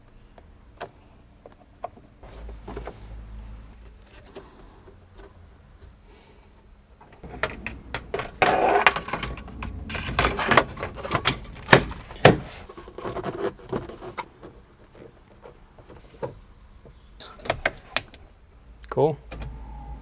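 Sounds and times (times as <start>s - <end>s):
plastic cover clicking and knocking: 7.2s - 15.5s.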